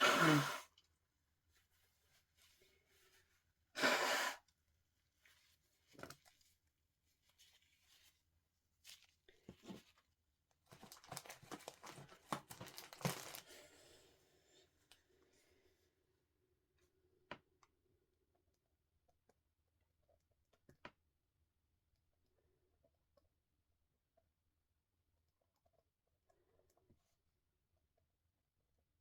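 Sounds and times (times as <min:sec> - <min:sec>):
sharp burst of breath: 0:00.0 - 0:00.7, 0:03.8 - 0:04.4
tissue crinkling and rustling: 0:10.6 - 0:13.7.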